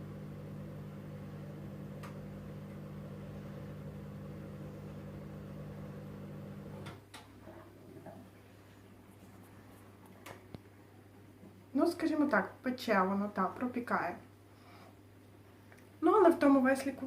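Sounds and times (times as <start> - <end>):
appliance motor humming: 0.0 - 6.9.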